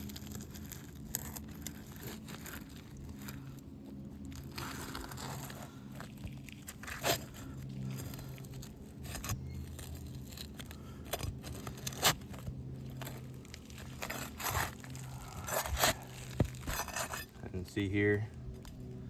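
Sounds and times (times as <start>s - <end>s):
low hum: 0.0s - 19.0s
crowbar prying roof shingle: 4.5s - 17.3s.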